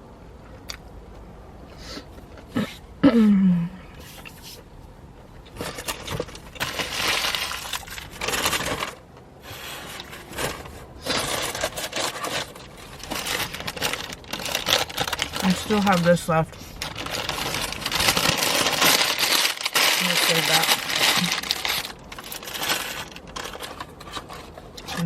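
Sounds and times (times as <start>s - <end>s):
paper wrapper crinkling: 5.5s - 9.0s, 9.6s - 25.0s.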